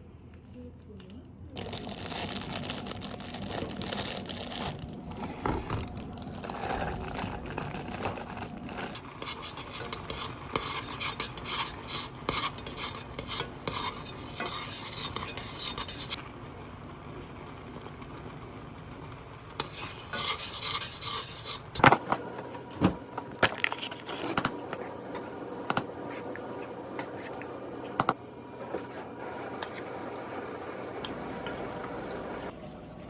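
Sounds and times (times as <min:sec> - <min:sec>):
scraping or stirring: 0:01.6 - 0:16.2, 0:19.6 - 0:22.5, 0:23.1 - 0:32.5
utensils clinking on dishes: 0:19.6 - 0:28.2, 0:29.5 - 0:30.0, 0:31.0 - 0:32.2.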